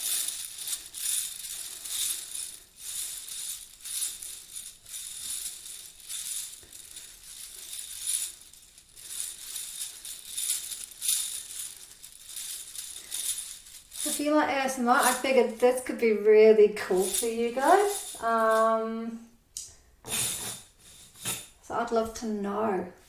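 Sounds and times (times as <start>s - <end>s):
chainmail rings jingling: 0.0s - 16.0s, 16.8s - 18.9s.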